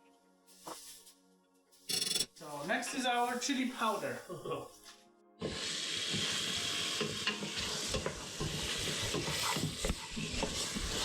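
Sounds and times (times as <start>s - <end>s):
stir-fry sizzling in a pan: 5.4s - 11.0s
utensil scraping and knocking pan: 7.0s - 11.0s.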